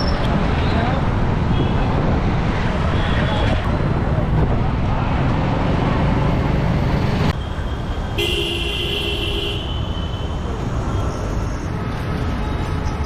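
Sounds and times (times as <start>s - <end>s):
light road traffic: 0.0s - 13.0s
loud street traffic rumble: 0.0s - 13.0s
vehicle horn: 8.2s - 10.1s.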